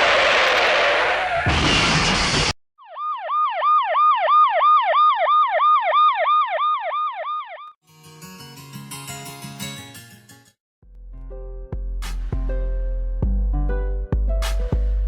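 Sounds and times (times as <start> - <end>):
siren yelping: 2.8 - 7.8
music: 7.8 - 15.0.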